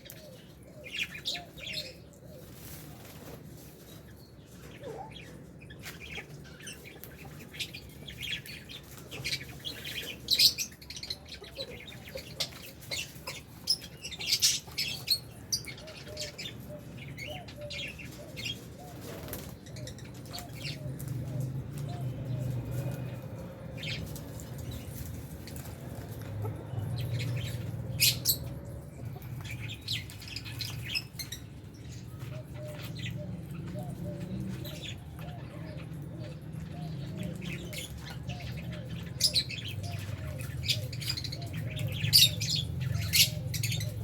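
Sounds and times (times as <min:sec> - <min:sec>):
birds chirping: 0:00.0 - 0:44.0
fluttering wings: 0:18.9 - 0:19.6.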